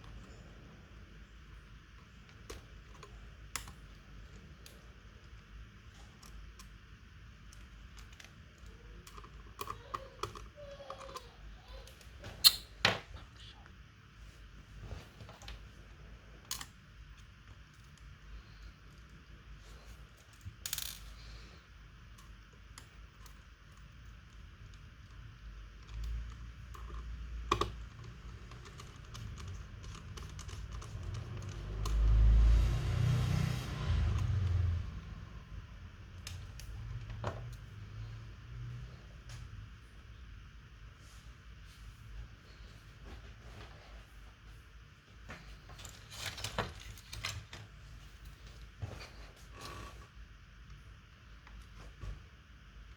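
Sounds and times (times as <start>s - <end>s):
small clicks handling laptop parts: 1.9s - 11.2s, 16.4s - 21.4s, 22.1s - 32.4s, 36.1s - 37.8s, 45.3s - 50.0s.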